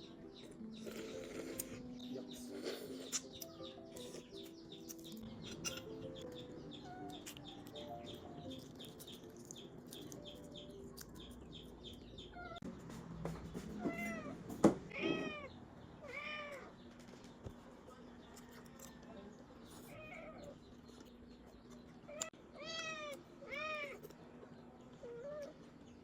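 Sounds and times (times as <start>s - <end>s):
cat meowing: 14.9s - 16.7s.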